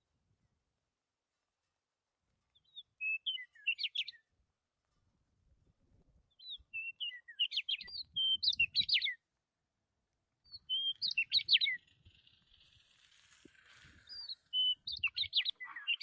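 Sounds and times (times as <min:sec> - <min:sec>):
songbird chirping and whistling: 0:02.5 - 0:04.3, 0:06.3 - 0:09.2, 0:10.5 - 0:12.5, 0:14.0 - 0:16.0.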